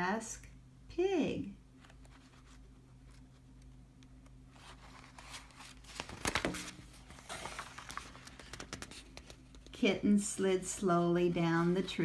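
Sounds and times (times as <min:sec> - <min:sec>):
book pages turning: 0:01.8 - 0:09.7.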